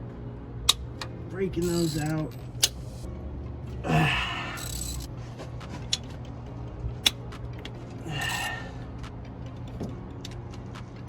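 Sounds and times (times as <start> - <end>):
bolt creaking loose: 0.7 - 2.9, 4.6 - 5.1
sharp metal clicks: 0.7 - 3.1, 4.6 - 5.1.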